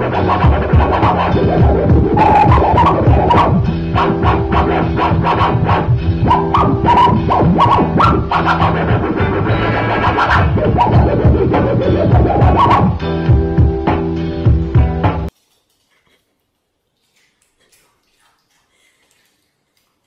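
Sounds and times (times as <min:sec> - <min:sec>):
record scratching: 0:00.0 - 0:13.0
electronic music with quick beat: 0:00.0 - 0:15.3.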